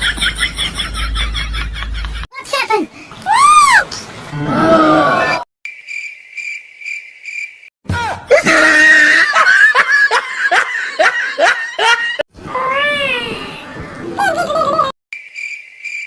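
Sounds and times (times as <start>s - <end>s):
cricket chirps: 5.7s - 7.7s, 15.1s - 16.0s
rapid high-pitched laughter: 14.0s - 15.0s.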